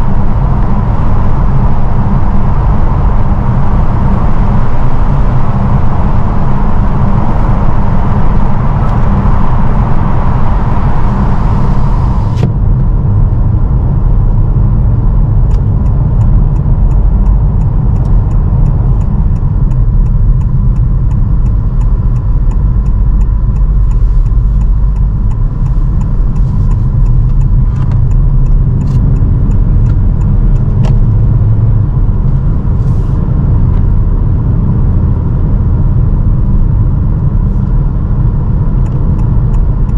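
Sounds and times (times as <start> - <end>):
road and wind noise: 0.0 - 39.9
light regular ticking: 15.2 - 32.8, 37.6 - 39.9.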